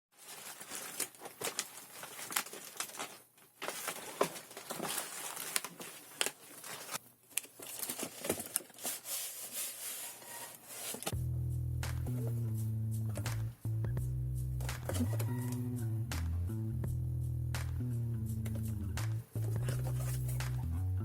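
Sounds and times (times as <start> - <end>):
packaging crinkling and tearing: 0.2 - 9.8.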